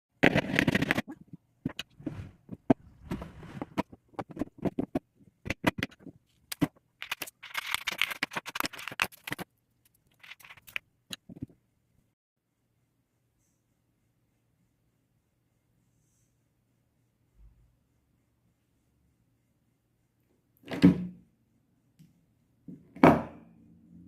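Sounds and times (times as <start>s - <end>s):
scraping: 0.2s - 9.5s.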